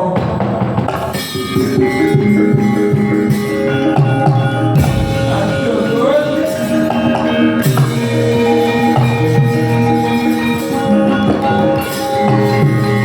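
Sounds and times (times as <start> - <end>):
low drum thump: 4.8 - 7.0
drum strokes: 4.8 - 7.9.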